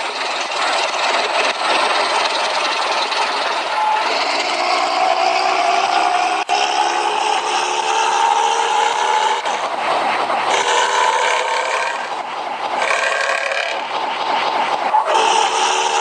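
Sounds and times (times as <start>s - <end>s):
bus horn pitched tone: 3.7s - 4.2s, 15.0s - 16.0s.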